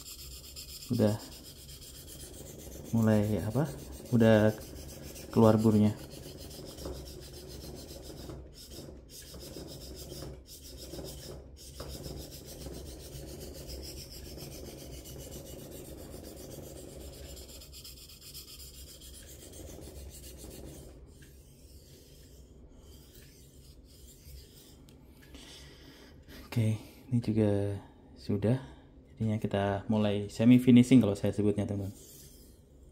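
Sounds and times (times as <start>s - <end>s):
knife scraping on whetstone: 0.0s - 24.8s, 31.9s - 32.6s.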